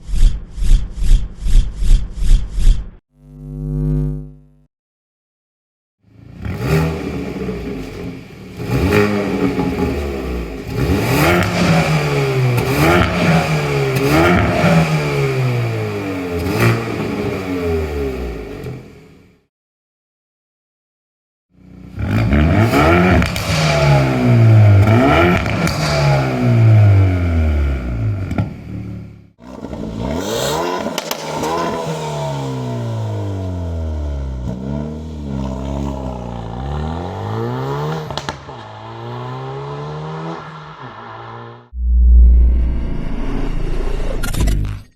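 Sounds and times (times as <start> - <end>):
car engine revving: 6.3 - 19.0, 21.9 - 44.6
exhaust cracks: 29.4 - 33.5, 34.3 - 39.4.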